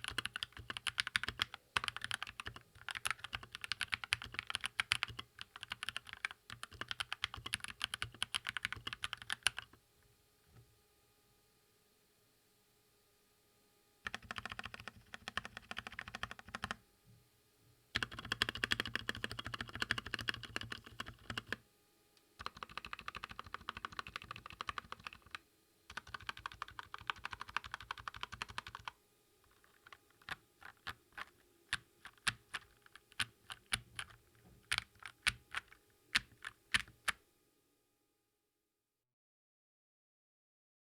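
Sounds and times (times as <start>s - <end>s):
mechanical keyboard keys pressed: 0.0s - 9.7s, 14.1s - 16.8s, 18.0s - 21.6s, 22.4s - 37.2s.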